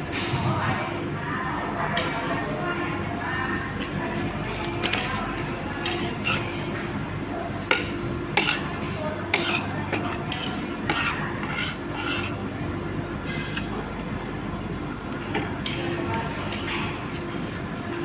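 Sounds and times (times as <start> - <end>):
cutlery clinking on dishes: 7.6 - 12.3.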